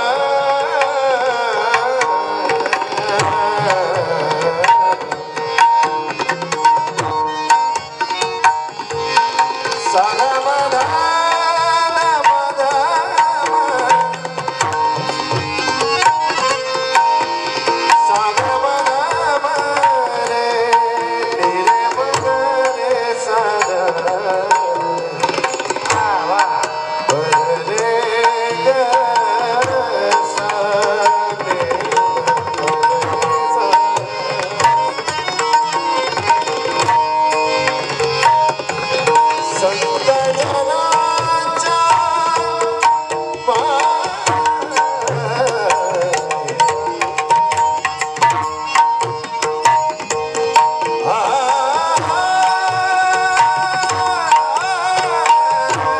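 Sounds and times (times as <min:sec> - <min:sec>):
person singing: 0:00.0 - 0:05.7, 0:09.8 - 0:14.6, 0:17.7 - 0:36.8, 0:38.0 - 0:47.3, 0:50.4 - 0:55.9.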